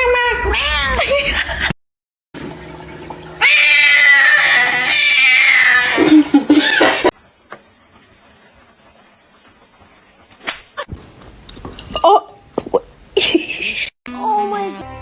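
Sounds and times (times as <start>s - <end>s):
cat yowling: 3.4s - 7.1s.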